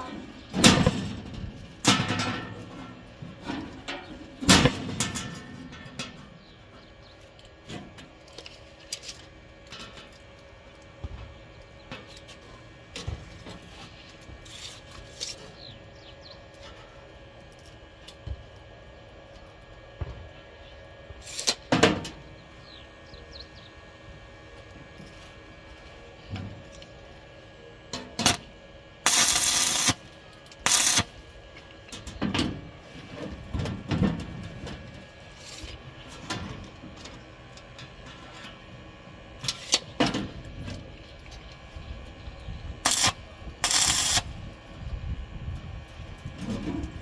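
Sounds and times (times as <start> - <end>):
electrical hum: 0.0 - 47.0
harsh noisy burst: 29.1 - 30.0, 30.7 - 31.0, 42.9 - 44.2.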